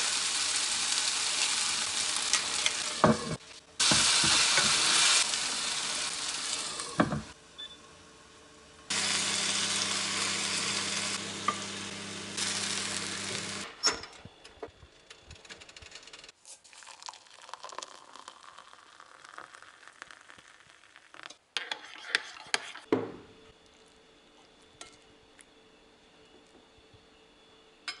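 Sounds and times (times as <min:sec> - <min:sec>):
frying sizzle in a pan: 0:00.0 - 0:13.7.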